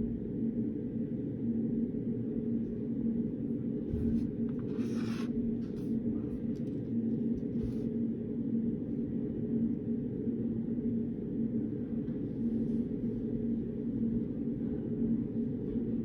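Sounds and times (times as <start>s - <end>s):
low room hum: 0.0s - 16.0s
pen scratching on paper: 4.6s - 5.9s.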